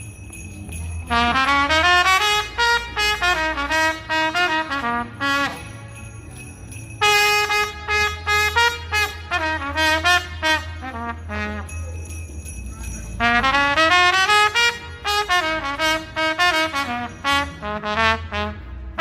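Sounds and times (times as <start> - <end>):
trumpet playing a melody: 1.1 - 5.8, 7.0 - 11.8, 13.2 - 19.0.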